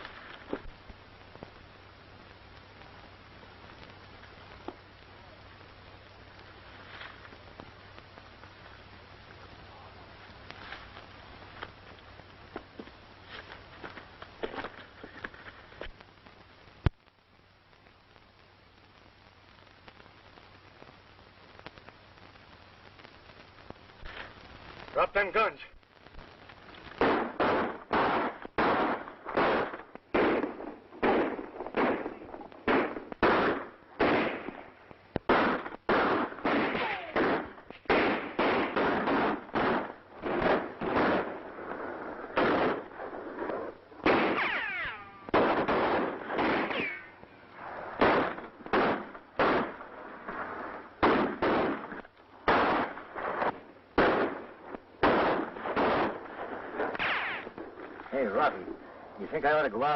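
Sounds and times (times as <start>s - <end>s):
gunshots with echoing tails: 27.0s - 50.4s, 51.0s - 57.9s.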